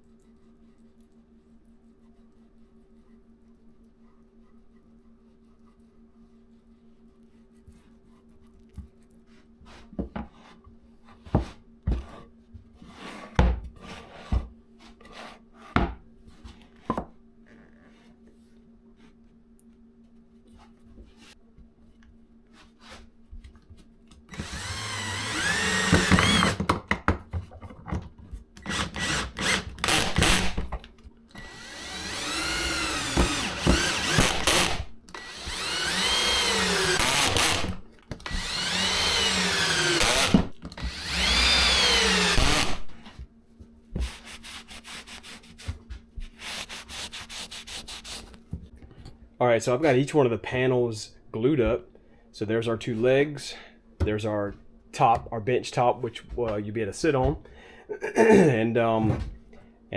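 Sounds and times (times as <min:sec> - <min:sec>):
power drill driving screws into wood: 0:24.3 - 0:26.7, 0:28.6 - 0:30.7, 0:31.4 - 0:42.9.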